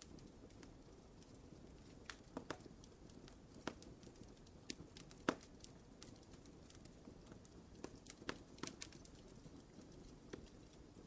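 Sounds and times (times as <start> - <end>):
soft steady hiss: 0.0 - 11.0
wood fire crackling and popping: 0.0 - 11.0.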